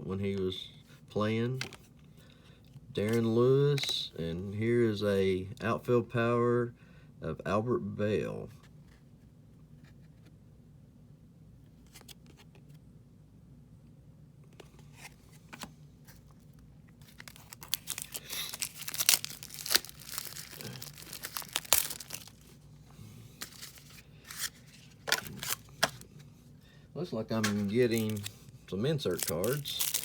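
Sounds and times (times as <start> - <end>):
foil wrapper crinkling: 17.0 - 22.6, 23.4 - 26.1, 27.4 - 30.0.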